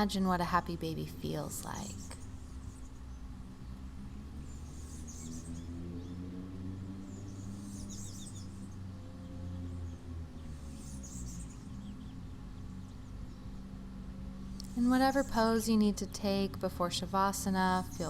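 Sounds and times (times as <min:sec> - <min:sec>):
steady low hum: 0:00.0 - 0:18.0
small birds twittering: 0:01.6 - 0:16.6, 0:17.5 - 0:18.0.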